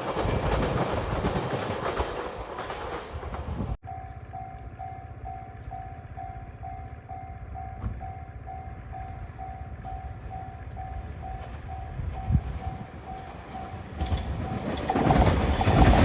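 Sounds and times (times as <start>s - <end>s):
level crossing warning bell ringing: 3.8s - 15.0s.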